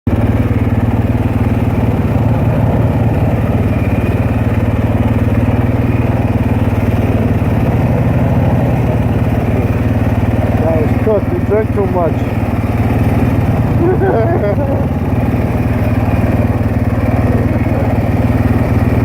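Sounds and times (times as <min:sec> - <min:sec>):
atv engine running: 0:00.0 - 0:19.0.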